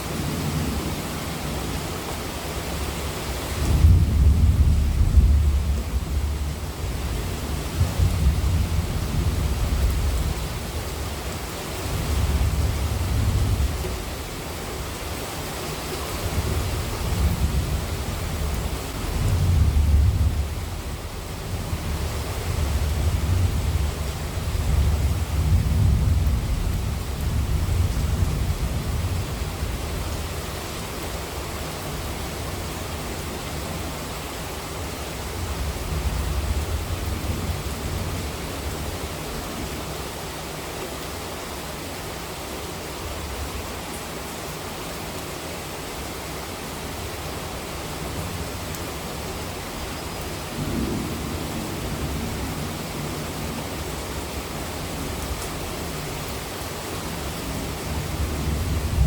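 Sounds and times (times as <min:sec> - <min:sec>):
heavy rain hissing: 0:00.0 - 0:59.0
low thunder rumbles: 0:03.6 - 0:10.8, 0:16.3 - 0:30.4, 0:57.5 - 0:59.0.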